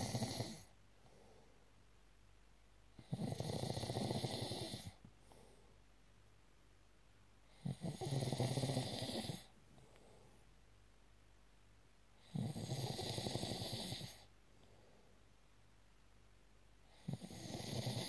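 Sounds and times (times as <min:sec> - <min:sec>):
person snoring: 0:00.0 - 0:00.7, 0:03.0 - 0:05.0, 0:07.6 - 0:09.5, 0:12.2 - 0:14.3, 0:16.9 - 0:18.0.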